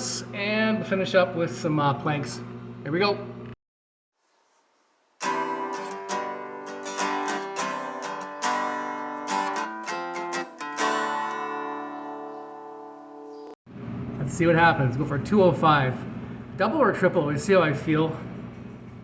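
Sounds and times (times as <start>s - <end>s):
acoustic guitar picking and strumming: 5.2s - 13.5s.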